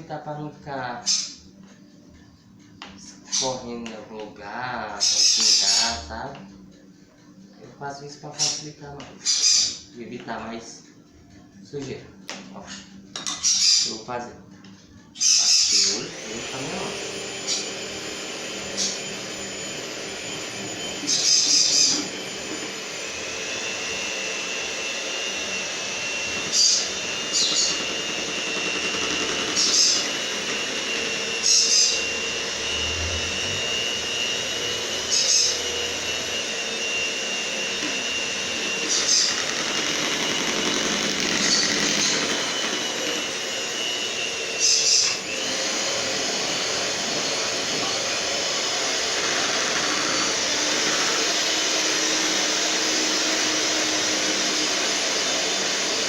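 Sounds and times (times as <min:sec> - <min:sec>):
electric mixer whining: 0:00.9 - 0:07.3, 0:15.1 - 0:56.0.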